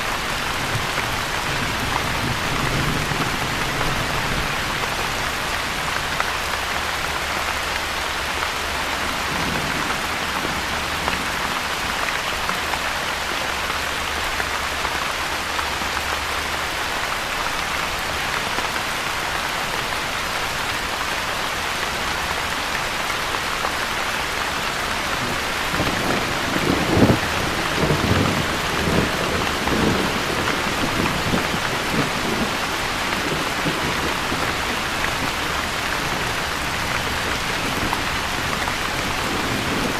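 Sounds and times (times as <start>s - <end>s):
steady rain falling: 0.0s - 39.9s
low rumble of thunder: 0.2s - 6.6s, 24.9s - 39.9s.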